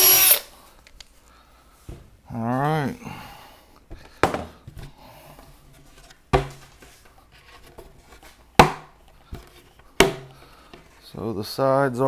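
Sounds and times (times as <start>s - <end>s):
plywood panels knocking: 6.3s - 6.8s, 10.0s - 10.9s.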